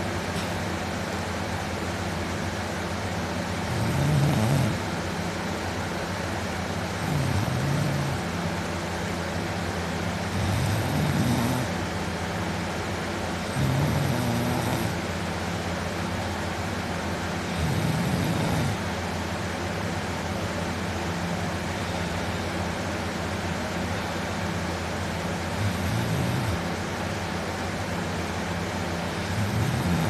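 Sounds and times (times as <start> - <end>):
steady hum: 0.0 - 30.0
man snoring: 3.6 - 4.9, 7.0 - 8.3, 10.2 - 11.8, 13.5 - 15.0, 17.5 - 18.8, 25.5 - 26.7, 29.1 - 30.0.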